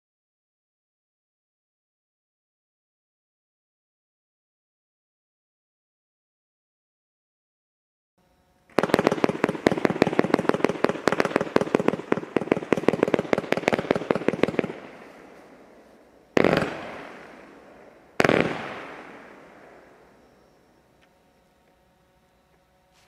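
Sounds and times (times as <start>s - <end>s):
fireworks bangs: 8.7s - 20.2s.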